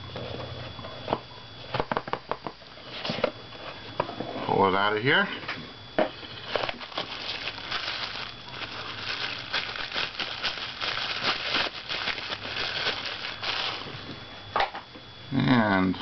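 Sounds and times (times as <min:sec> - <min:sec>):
packaging rustling: 0:06.3 - 0:14.0.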